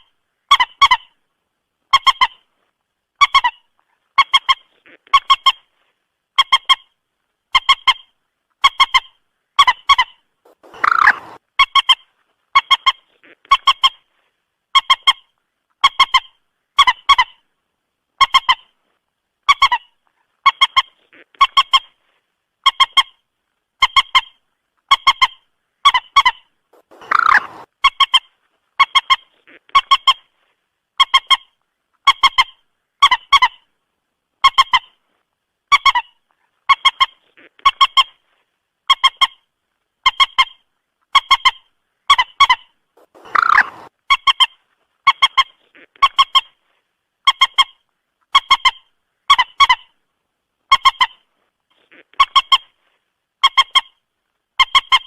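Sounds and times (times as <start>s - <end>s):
moorhen clucking calls: 7.5s - 14.1s, 23.8s - 30.3s, 40.0s - 46.6s, 50.7s - 52.8s.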